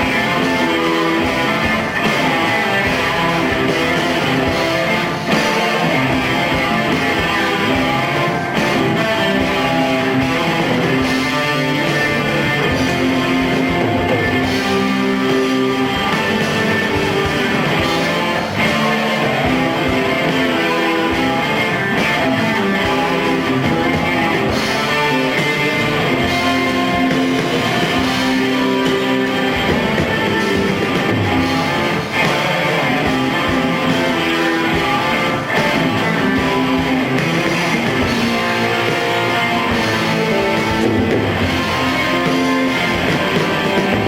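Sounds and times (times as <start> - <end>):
loud guitars: 0.0 - 44.0
rock band playing live: 0.0 - 44.0.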